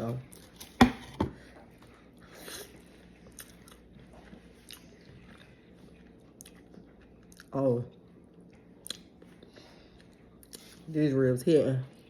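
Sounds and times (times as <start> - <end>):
person chewing: 1.6 - 10.8.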